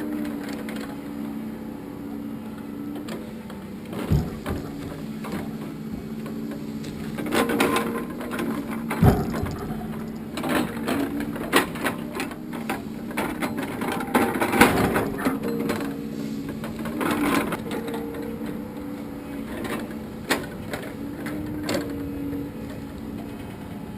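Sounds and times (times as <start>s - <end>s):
engine hum: 2.5s - 11.7s.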